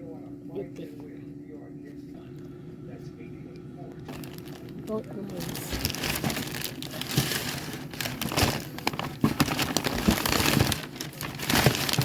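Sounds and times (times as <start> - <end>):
packaging crinkling and rustling: 4.0 - 12.0.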